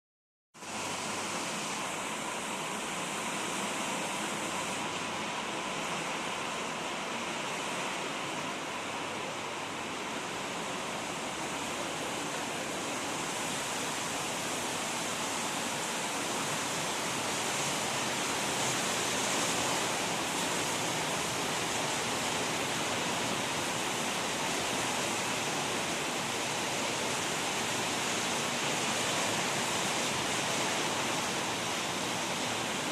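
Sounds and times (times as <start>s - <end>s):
heavy rain falling: 10.6s - 32.9s.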